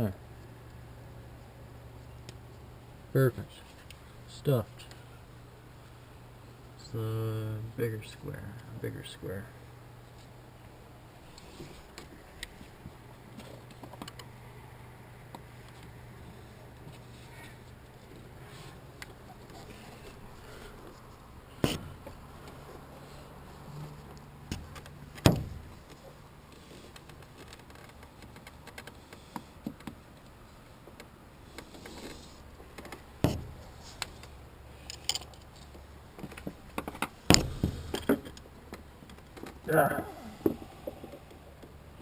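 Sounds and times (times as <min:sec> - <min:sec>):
sharp knocks: 0:25.2 - 0:25.6, 0:33.2 - 0:33.6, 0:36.8 - 0:38.3.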